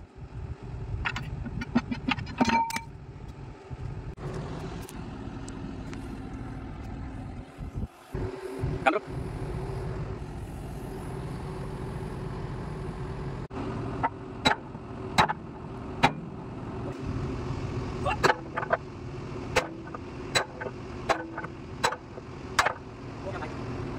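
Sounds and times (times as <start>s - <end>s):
diesel engine idling: 2.8s - 23.9s.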